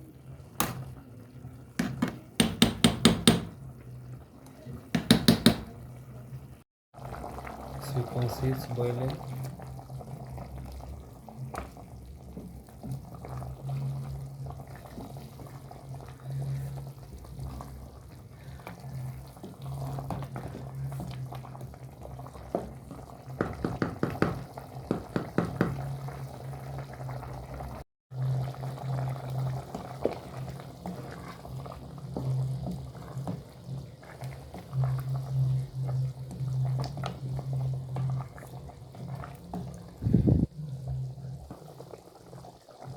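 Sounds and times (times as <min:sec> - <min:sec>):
pot of water boiling: 0:00.0 - 0:42.9
low hum: 0:40.0 - 0:41.2.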